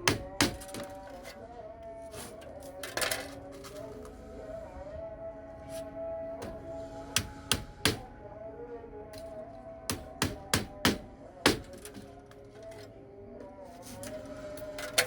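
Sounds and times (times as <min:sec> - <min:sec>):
hammer striking wood: 0:00.0 - 0:01.0, 0:07.2 - 0:08.1, 0:09.9 - 0:12.0
background music: 0:00.0 - 0:15.0.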